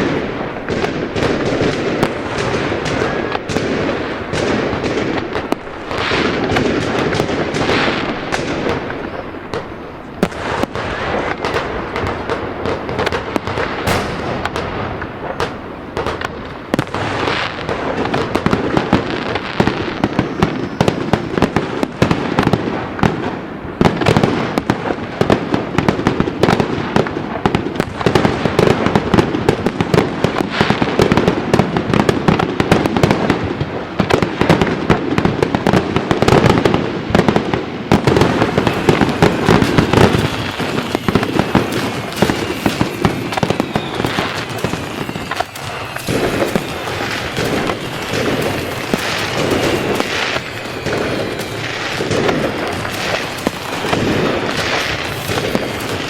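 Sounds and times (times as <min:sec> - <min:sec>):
fireworks cracks and bangs: 0:00.0 - 0:56.0
rumbling crackle: 0:10.3 - 0:19.0, 0:37.3 - 0:56.0.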